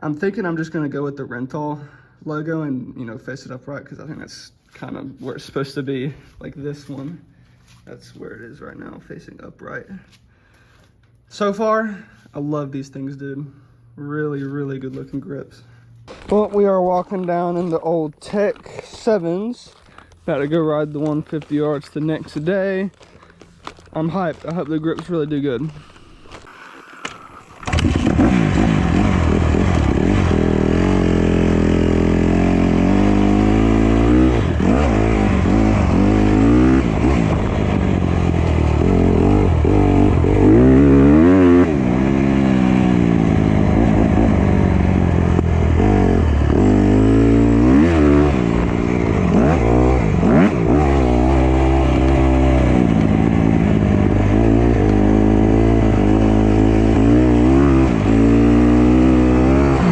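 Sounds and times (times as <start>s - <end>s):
motocross bike engine revving: 27.2s - 59.9s.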